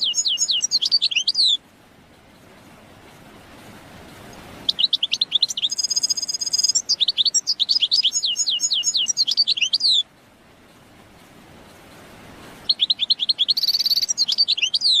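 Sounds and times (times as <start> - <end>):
bird twittering song: 0.0 - 1.6, 4.3 - 10.1, 12.7 - 15.0
faint background hiss: 0.0 - 15.0.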